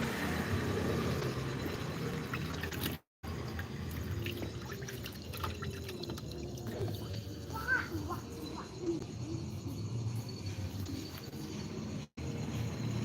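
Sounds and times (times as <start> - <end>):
water dripping and trickling: 1.2 - 8.4.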